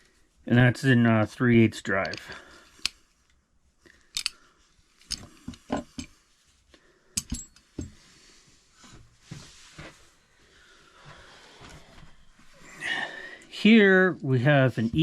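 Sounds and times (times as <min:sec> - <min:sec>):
soft rustle: 0:08.1 - 0:12.8.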